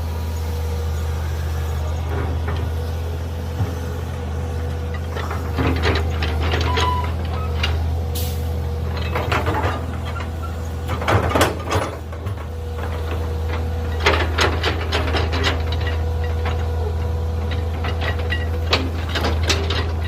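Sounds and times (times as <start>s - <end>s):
faint hydraulic whine: 0.0s - 10.8s
excavator engine running: 0.0s - 20.0s.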